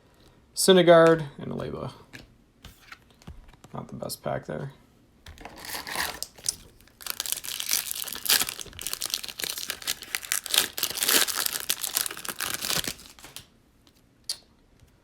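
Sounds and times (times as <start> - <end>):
foil wrapper tearing and crinkling: 5.5 - 13.5.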